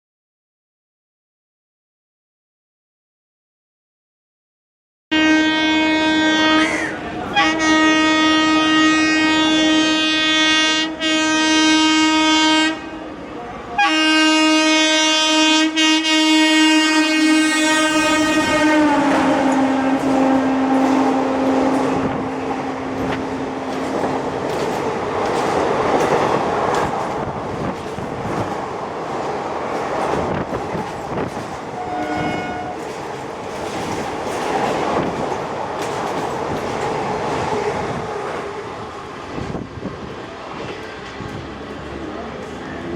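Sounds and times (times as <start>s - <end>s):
locomotive horn blast: 5.1s - 13.0s, 13.8s - 23.9s, 31.7s - 32.8s
train wheels clattering over rail joints: 18.9s - 42.9s.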